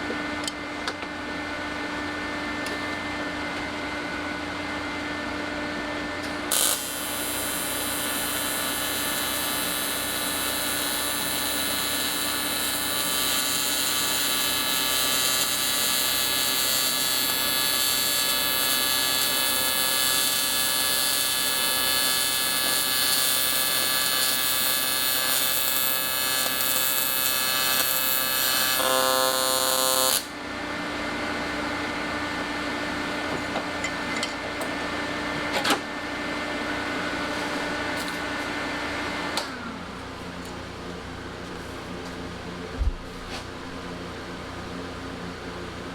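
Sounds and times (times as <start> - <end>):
welding machine hum: 6.2 - 31.1
welding arc buzzing and hissing: 6.3 - 30.4
welding arc crack: 6.4 - 30.3.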